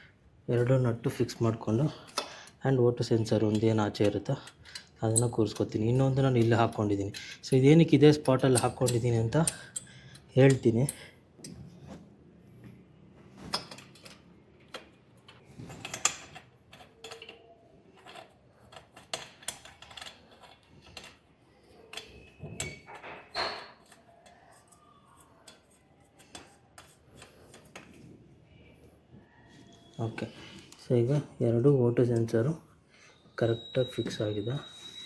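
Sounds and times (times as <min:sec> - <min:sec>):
hand tools clinking on metal: 0:03.2 - 0:11.1.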